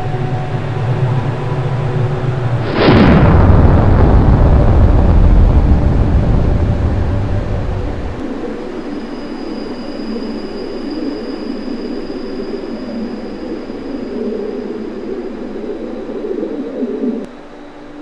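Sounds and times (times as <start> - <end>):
thin high whine: 0.0 - 18.0
rumbling rushing noise: 0.7 - 9.0.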